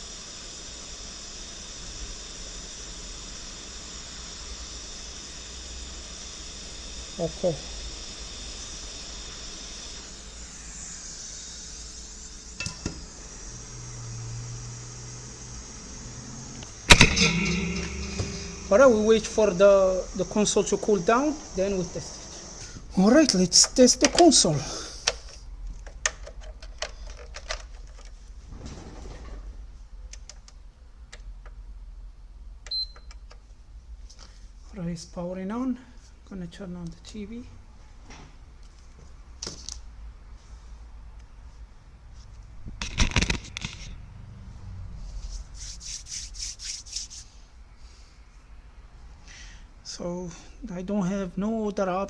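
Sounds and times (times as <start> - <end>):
low hum: 12.6 - 22.8.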